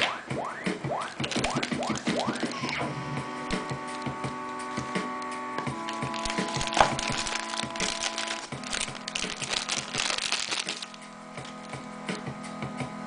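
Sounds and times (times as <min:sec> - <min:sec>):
background music with sustained chords: 0:00.0 - 0:13.0.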